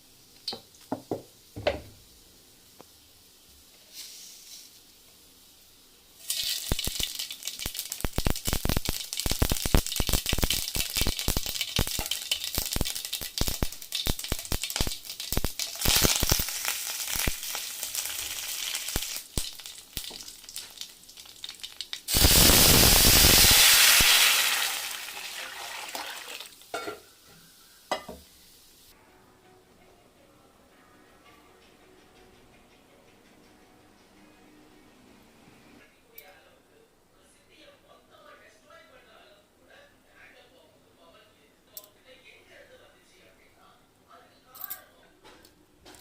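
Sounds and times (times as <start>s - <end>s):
spices crackling in hot oil: 0.0s - 29.0s
loud sizzling rush: 22.1s - 26.6s.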